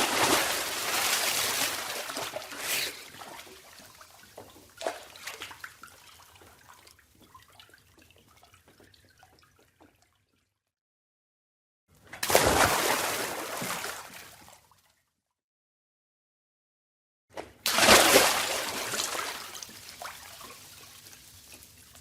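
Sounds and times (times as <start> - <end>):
dive splash: 0.0 - 3.6, 12.2 - 14.2, 17.6 - 20.3
water churning and sloshing: 0.0 - 10.4, 12.2 - 14.8, 17.6 - 21.6
water drips and trickles: 0.0 - 10.7, 18.8 - 22.0.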